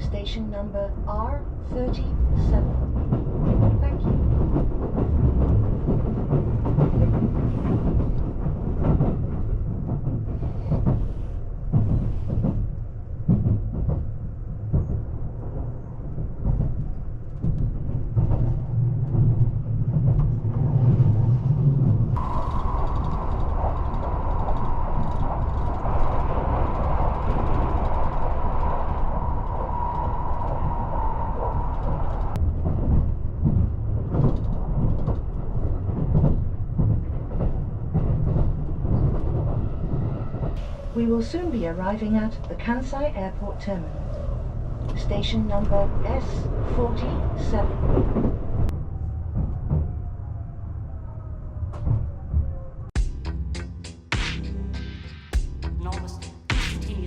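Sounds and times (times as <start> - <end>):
train rumbling: 0.0 - 57.0.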